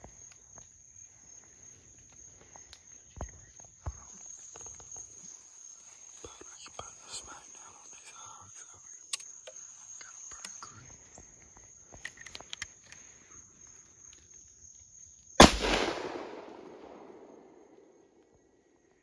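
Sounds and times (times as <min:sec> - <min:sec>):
high insect buzz: 0:00.0 - 0:15.5
faint clicks: 0:08.0 - 0:14.5
rifle shot echoing: 0:15.4 - 0:17.8.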